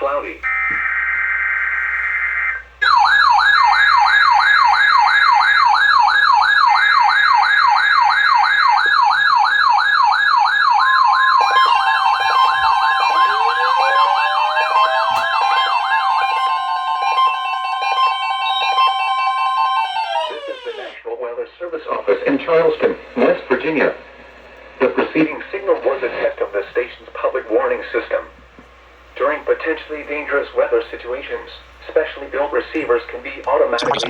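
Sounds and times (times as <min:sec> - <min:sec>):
overlapping alarm tones: 0:00.4 - 0:21.0, 0:33.8 - 0:34.0
steady alarm tone: 0:00.4 - 0:21.0, 0:29.0 - 0:34.0
warbling siren tone: 0:09.4 - 0:21.0
digital data burst tones: 0:33.7 - 0:34.0.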